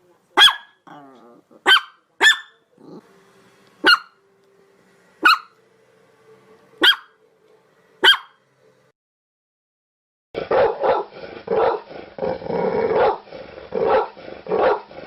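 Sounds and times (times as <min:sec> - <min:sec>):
dog barking: 0:00.4 - 0:00.8, 0:01.6 - 0:02.6, 0:03.8 - 0:04.2, 0:05.2 - 0:05.6, 0:06.8 - 0:07.2, 0:08.0 - 0:08.4, 0:10.4 - 0:11.9, 0:12.9 - 0:13.2, 0:13.8 - 0:14.9.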